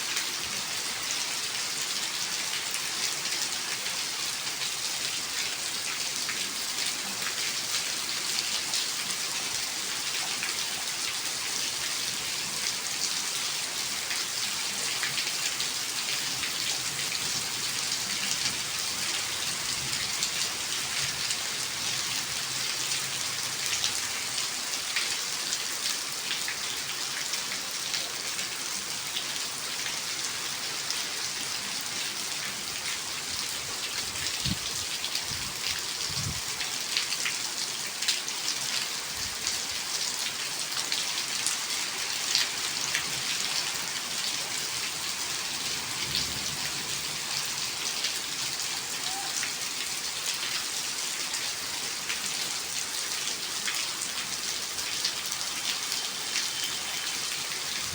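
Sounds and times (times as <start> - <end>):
steady rain hiss: 0.0 - 57.9.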